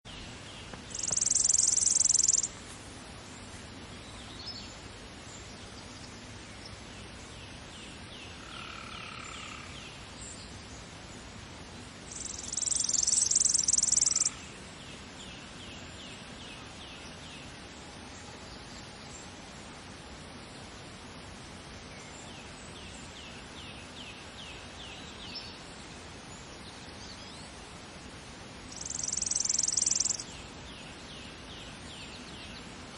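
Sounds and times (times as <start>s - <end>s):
outdoor background hiss: 0.0s - 32.9s
sparrow trilling song: 0.1s - 2.5s, 12.1s - 14.4s, 28.7s - 32.7s
other birds calling: 0.6s - 2.5s.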